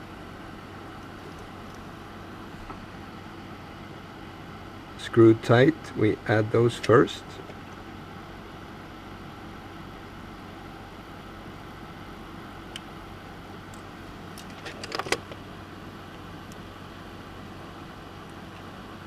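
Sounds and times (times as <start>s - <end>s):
steady low background noise: 0.0s - 19.0s
small clicks and rattles: 14.4s - 15.4s.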